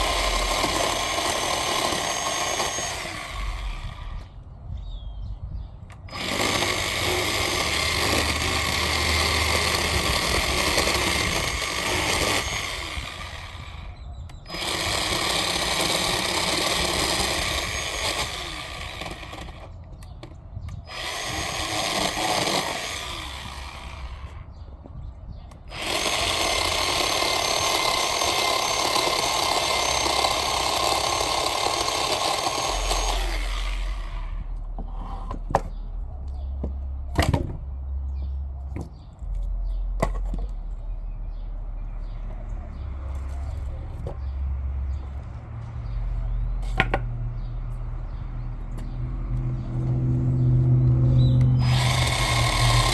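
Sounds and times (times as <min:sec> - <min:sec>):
chainsaw cutting wood: 0:00.0 - 0:04.3, 0:05.9 - 0:19.8, 0:20.9 - 0:24.5, 0:25.7 - 0:35.7, 0:48.8 - 0:52.9.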